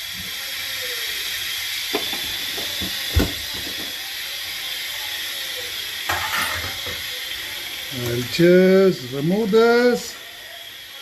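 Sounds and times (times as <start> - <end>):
steam hissing from pressure cooker: 0.0 - 11.0.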